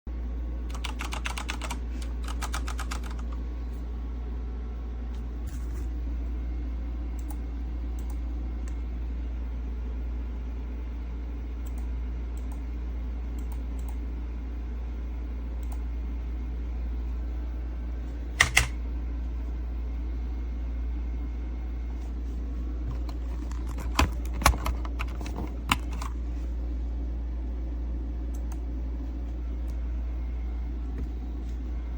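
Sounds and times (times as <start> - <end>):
low electrical hum: 0.1 - 31.9
mechanical keyboard typing: 0.7 - 3.4, 18.4 - 18.8, 23.0 - 26.2.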